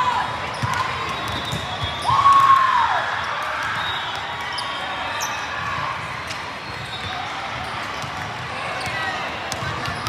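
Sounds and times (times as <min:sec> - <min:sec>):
crowd chatter: 0:00.0 - 0:10.0
sneaker squeaking on gym floor: 0:00.4 - 0:02.1, 0:06.6 - 0:10.0.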